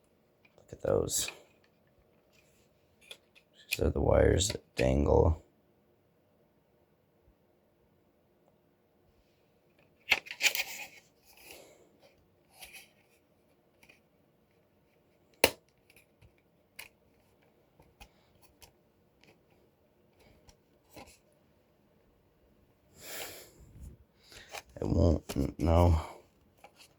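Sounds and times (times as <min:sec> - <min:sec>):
plastic clicks and rustles: 0:01.4 - 0:03.7, 0:09.7 - 0:11.5.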